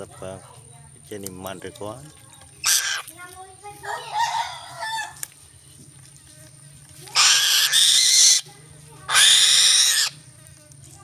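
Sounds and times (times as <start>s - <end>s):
bird of prey screeching: 2.6s - 3.1s, 7.1s - 8.5s, 9.1s - 10.2s.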